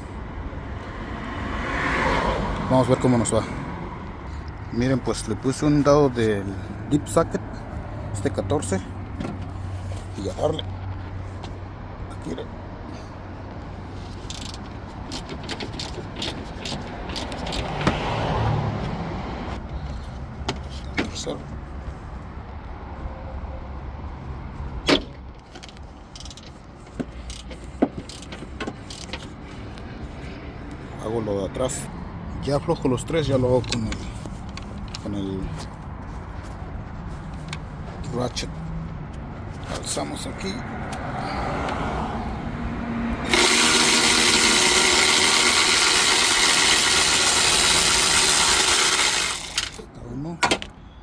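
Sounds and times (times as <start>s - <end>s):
tool clicking against metal: 43.3s - 49.9s.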